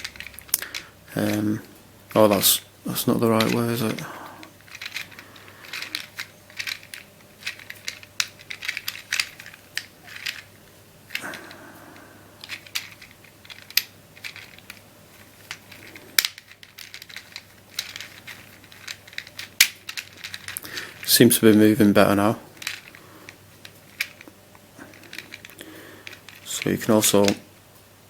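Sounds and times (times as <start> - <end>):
plastic puzzle tiles clicking: 0.0 - 2.4, 3.0 - 10.5, 11.1 - 27.5.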